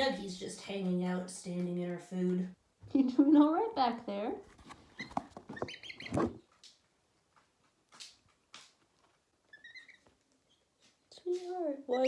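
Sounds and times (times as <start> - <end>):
baby bird peeping: 4.9 - 6.5, 9.5 - 10.8, 11.8 - 12.0.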